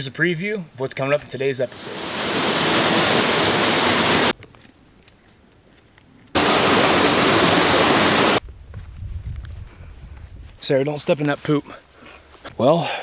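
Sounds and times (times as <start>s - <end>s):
waterfall rushing: 1.7s - 4.3s, 6.4s - 8.4s.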